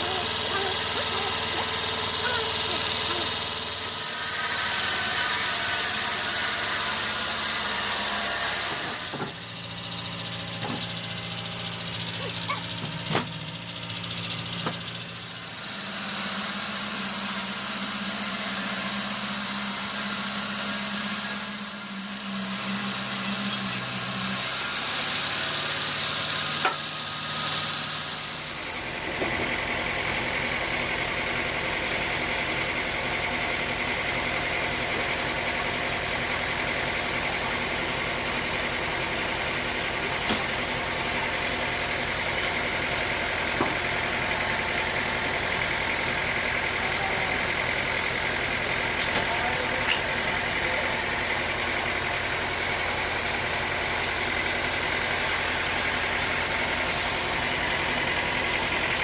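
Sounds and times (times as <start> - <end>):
saw blade cutting log: 0.0 - 9.4, 15.6 - 28.7
sawmill engine humming: 0.0 - 59.0.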